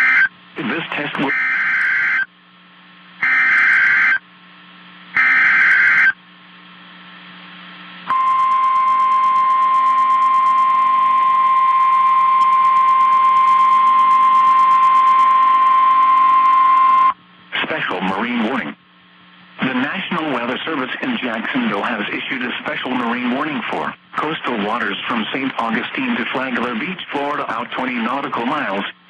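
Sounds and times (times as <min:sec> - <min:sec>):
steady warning alarm tone: 0:00.0 - 0:00.3, 0:01.2 - 0:02.3, 0:03.2 - 0:04.2, 0:05.1 - 0:06.2, 0:08.1 - 0:17.2
faint radio hiss: 0:00.4 - 0:01.3, 0:17.2 - 0:29.0
raspy digital data buzzes: 0:03.2 - 0:04.2, 0:05.2 - 0:06.2.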